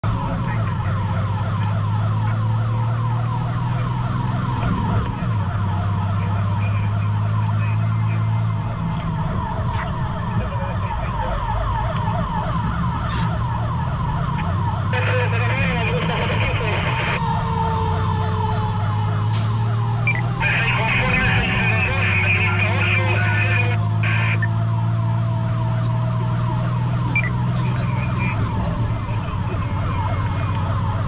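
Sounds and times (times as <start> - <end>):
fire engine siren yelping: 0.0 - 31.0
truck engine drone: 0.0 - 31.0.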